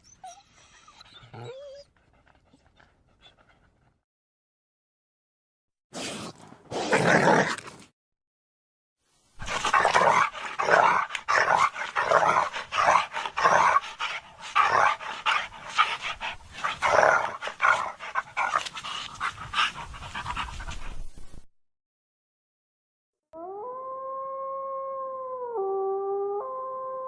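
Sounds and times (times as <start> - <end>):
dog panting: 1.1 - 4.0, 11.6 - 21.2.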